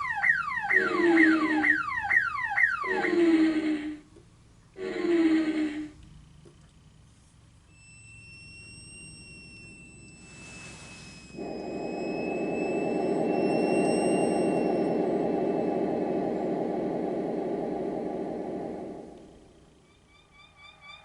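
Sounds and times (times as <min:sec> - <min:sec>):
thin high whine: 0:00.0 - 0:04.0, 0:05.4 - 0:21.0
short hiss: 0:10.3 - 0:11.3
loud low rushing roar: 0:11.4 - 0:19.7.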